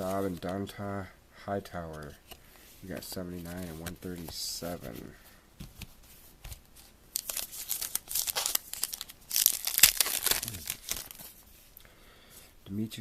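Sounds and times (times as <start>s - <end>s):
wrapper tearing and crinkling: 7.2s - 11.3s.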